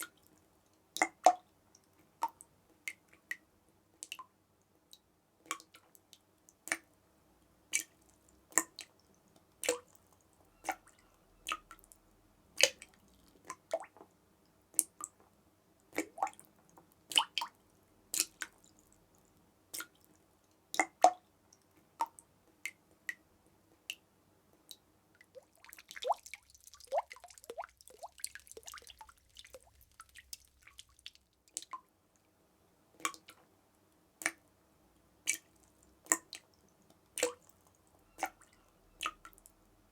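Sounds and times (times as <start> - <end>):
water dripping: 0.0 - 7.0, 7.7 - 32.3, 33.0 - 33.5, 34.2 - 34.5, 35.2 - 39.7
water trickling: 24.7 - 31.9.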